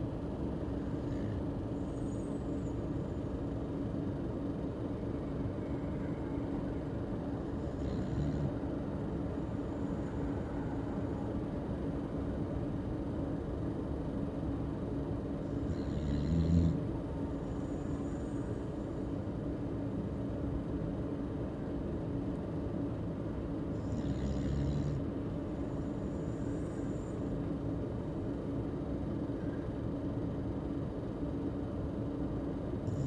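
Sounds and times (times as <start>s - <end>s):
steady low hum: 0.0s - 33.0s
pet snoring: 0.8s - 2.8s, 7.4s - 8.7s, 15.4s - 19.1s, 23.7s - 27.3s.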